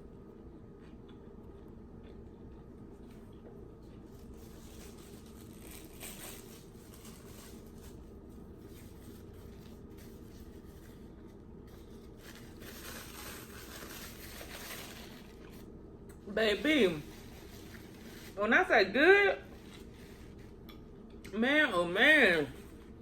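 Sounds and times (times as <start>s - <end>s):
chewing food: 0.6s - 4.3s
wrapper rustling and crinkling: 4.2s - 11.1s, 11.7s - 15.7s, 16.5s - 18.4s.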